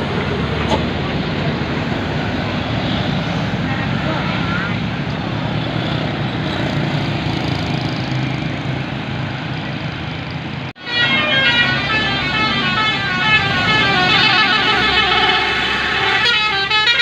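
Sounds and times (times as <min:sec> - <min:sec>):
heavy vehicle engine running: 0:00.0 - 0:17.0
multi-toned bus horn tune: 0:10.8 - 0:17.0.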